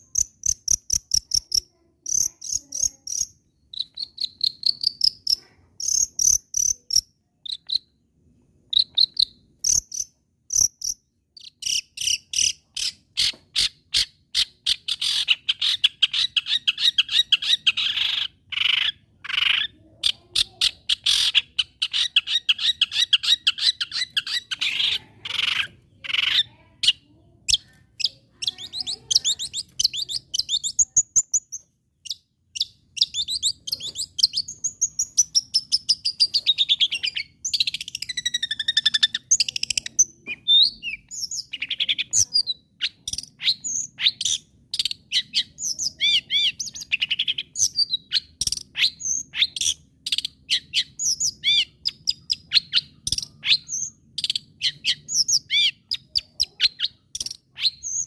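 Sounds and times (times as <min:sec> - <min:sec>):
shrike singing chirps and whistles: 0:00.0 - 0:07.9, 0:08.7 - 0:19.6, 0:20.9 - 0:58.0.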